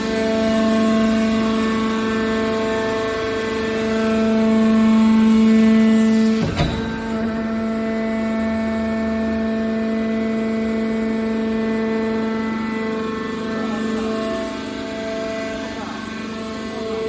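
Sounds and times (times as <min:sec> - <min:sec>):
hydraulic power unit humming: 0:00.3 - 0:17.0
sharp knock: 0:06.4 - 0:07.7.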